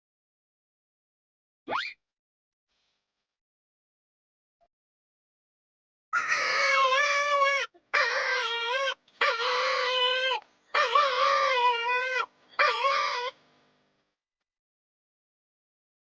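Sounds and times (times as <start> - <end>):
dog howling: 6.2 - 13.4.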